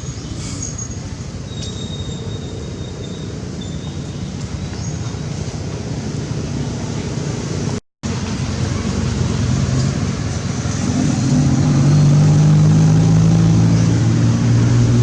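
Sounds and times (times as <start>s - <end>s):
vehicle engine running: 8.1s - 15.0s.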